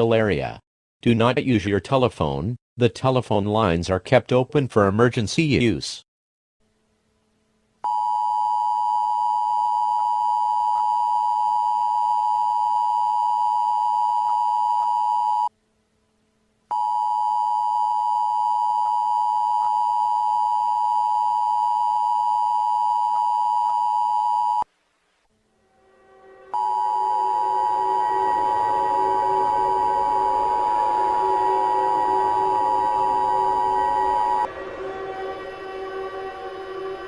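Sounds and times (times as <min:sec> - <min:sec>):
two-tone attention signal: 0:26.5 - 0:34.5.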